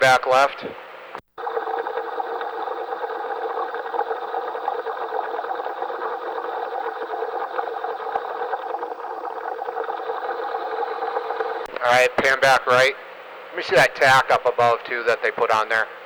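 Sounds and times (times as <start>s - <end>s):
air and bubbles rushing: 1.4s - 12.4s.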